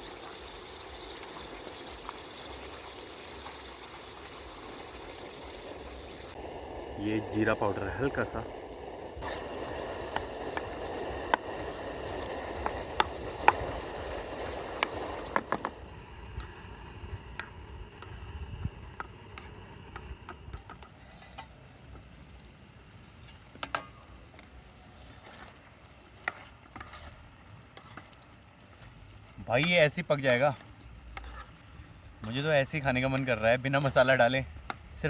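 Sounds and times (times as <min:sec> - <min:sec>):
chicken sizzling in a pan: 0:00.0 - 0:22.4.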